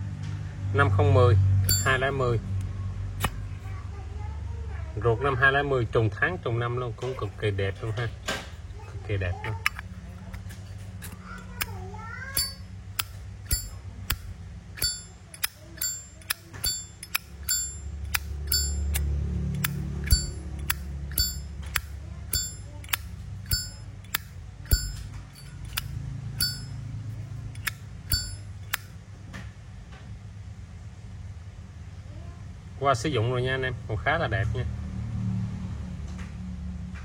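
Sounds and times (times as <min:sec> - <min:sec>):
lighter lid clicking with ringing ping: 0:12.4 - 0:14.2, 0:14.8 - 0:19.0, 0:19.6 - 0:26.8, 0:27.6 - 0:28.9.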